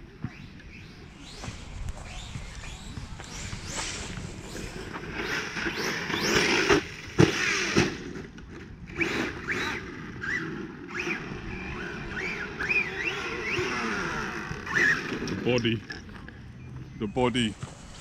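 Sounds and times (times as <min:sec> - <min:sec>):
rising electric motor whines: 0:00.2 - 0:15.6
rc car running over rough ground: 0:00.3 - 0:16.1
rc car crash impact: 0:05.2 - 0:08.2.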